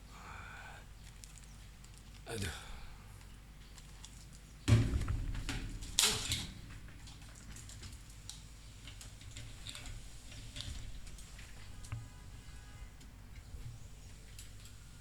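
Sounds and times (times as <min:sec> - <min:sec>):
faint scattered clicks: 0:01.0 - 0:02.3, 0:14.1 - 0:14.8
handling knocks and clatter: 0:03.7 - 0:11.9.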